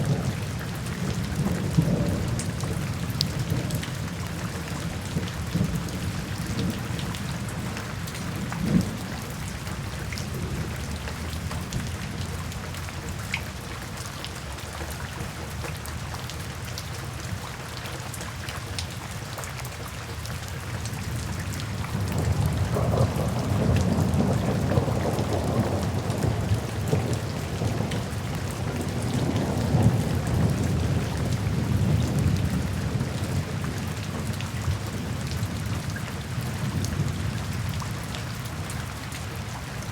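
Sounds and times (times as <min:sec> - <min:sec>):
rolling thunder rumble: 0:00.1 - 0:12.6, 0:21.4 - 0:35.7.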